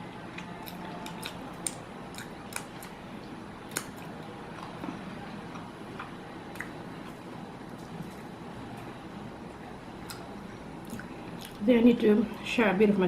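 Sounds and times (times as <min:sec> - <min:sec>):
person chewing food: 0:00.3 - 0:08.9, 0:10.0 - 0:11.6.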